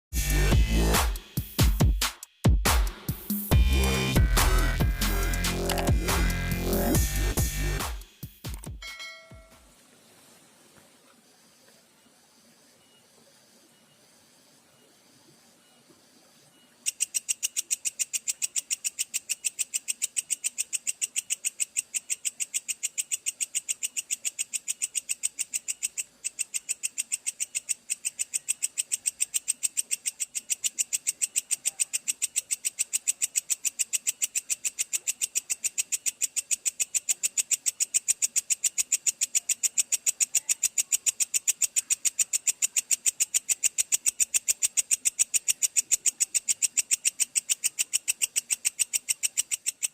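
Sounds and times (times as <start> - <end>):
katydid chirping: 16.5 - 49.9.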